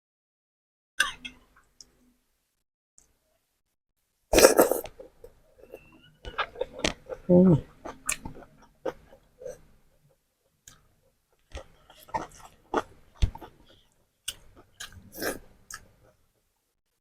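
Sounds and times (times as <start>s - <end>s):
person chewing: 4.4s - 9.6s, 10.6s - 16.2s.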